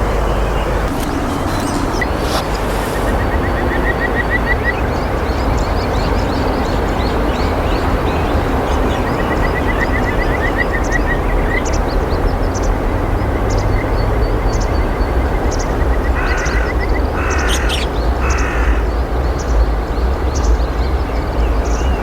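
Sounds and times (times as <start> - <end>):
steady rushing noise: 0.0 - 13.3
small bird chirping: 15.5 - 18.5.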